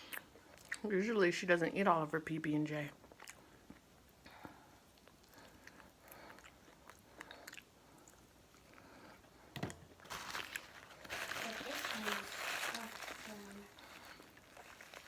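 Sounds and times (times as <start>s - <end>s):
chewing with soft smacks: 0.0s - 0.9s, 2.9s - 9.4s.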